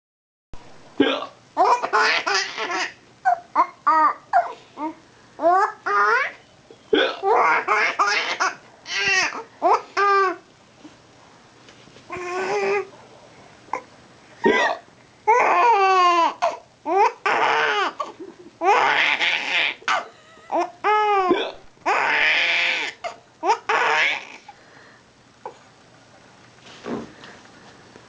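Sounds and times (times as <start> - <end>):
baby laughing and babbling: 1.6 - 6.4, 7.2 - 10.4, 12.1 - 12.9, 15.3 - 24.5.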